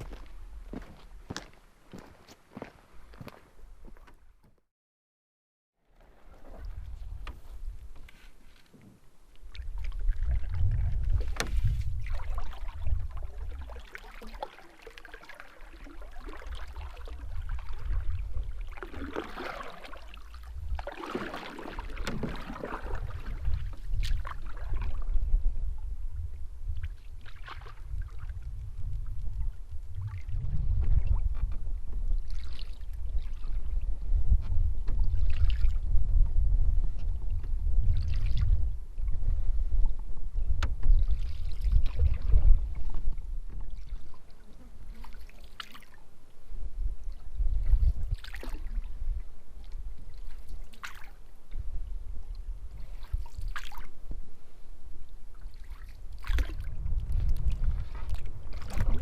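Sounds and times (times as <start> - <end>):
paddle splashing through water: 6.0 - 25.3, 26.7 - 28.6, 29.2 - 33.9, 34.9 - 35.9, 40.5 - 46.1, 46.8 - 54.2, 55.3 - 59.0
wind buffeting microphone: 6.4 - 8.1, 9.4 - 13.8, 16.5 - 18.8, 20.3 - 20.9, 21.8 - 44.8, 46.5 - 50.0, 55.9 - 59.0.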